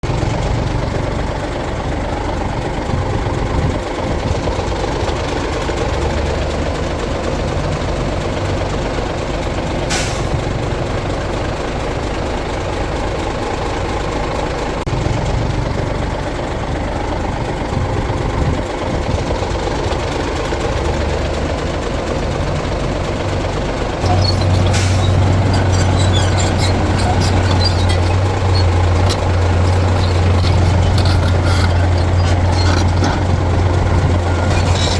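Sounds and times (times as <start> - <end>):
diesel earthmoving machinery running: 0.1 - 34.9
engine deep drone: 23.1 - 34.9.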